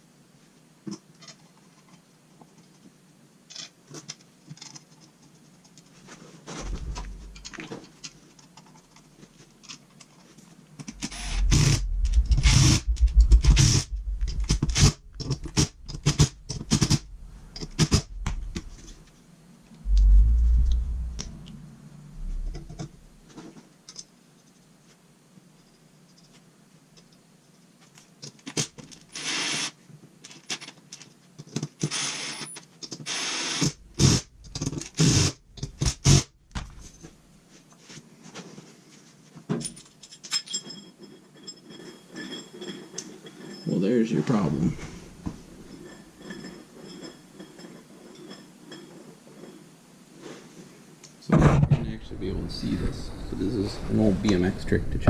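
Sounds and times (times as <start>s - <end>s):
parts clattering: 6.4s - 19.2s, 39.4s - 49.7s
heavy low thumps: 6.6s - 7.5s, 11.2s - 19.0s, 19.8s - 23.2s
tools clicking and scraping: 6.6s - 19.9s, 39.6s - 43.8s, 44.8s - 49.7s.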